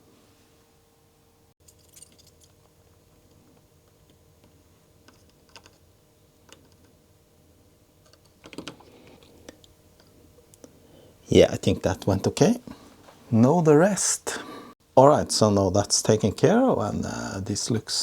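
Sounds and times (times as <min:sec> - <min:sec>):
small tools clicking and tapping: 0:05.0 - 0:05.8.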